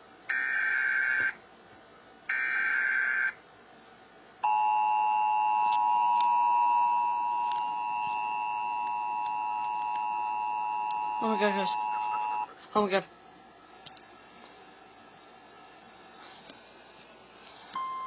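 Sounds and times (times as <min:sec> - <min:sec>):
two-tone attention signal: 0:04.5 - 0:12.5
buzzy data bursts: 0:07.4 - 0:12.5.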